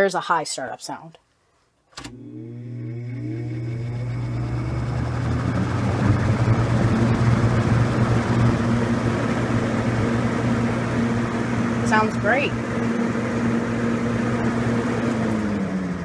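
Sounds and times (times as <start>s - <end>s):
box fan starting up: 2.0s - 16.0s.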